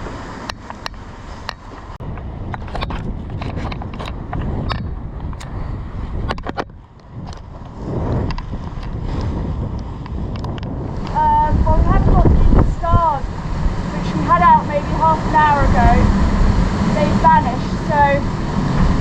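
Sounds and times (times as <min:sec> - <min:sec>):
sea noise: 0:00.0 - 0:19.0
wind: 0:00.0 - 0:19.0
wind buffeting microphone: 0:00.0 - 0:19.0
sharp clicks and knocks: 0:00.5 - 0:05.5, 0:06.2 - 0:09.0.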